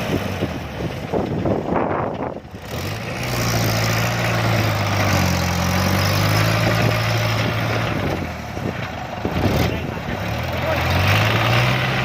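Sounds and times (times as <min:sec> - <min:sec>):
diesel engine droning: 0:00.0 - 0:12.0.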